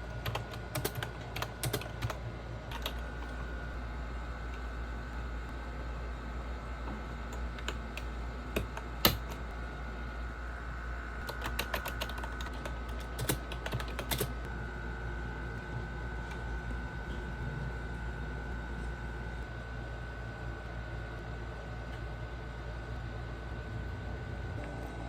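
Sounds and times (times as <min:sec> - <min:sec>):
keyboard keystrokes: 0:00.2 - 0:03.0, 0:07.3 - 0:09.4, 0:11.2 - 0:14.3.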